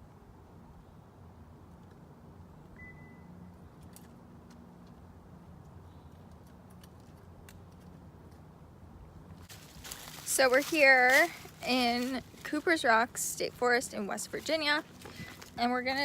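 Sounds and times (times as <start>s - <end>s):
short high beep: 2.8s - 3.4s.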